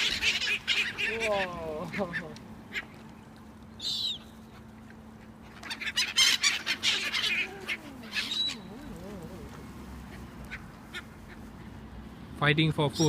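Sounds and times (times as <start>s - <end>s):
gull call: 0.0s - 2.9s, 5.1s - 11.8s
gulls squawking and screeching: 0.0s - 3.0s, 3.8s - 11.8s.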